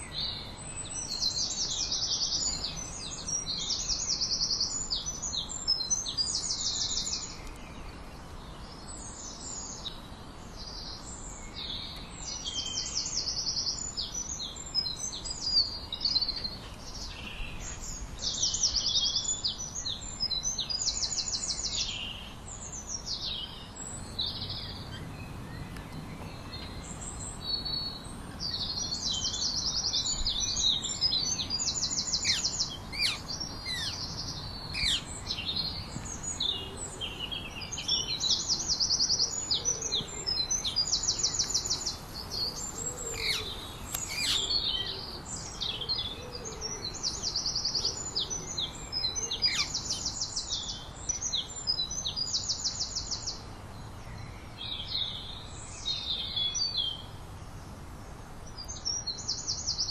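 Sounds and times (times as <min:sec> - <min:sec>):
birds chirping and whistling: 0:23.8 - 0:50.3
bird high trill: 0:24.0 - 0:50.2.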